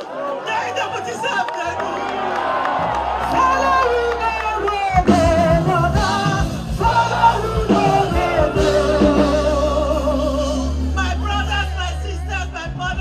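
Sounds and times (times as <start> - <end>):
bass and beat: 2.8 - 13.0
person singing: 3.4 - 13.0.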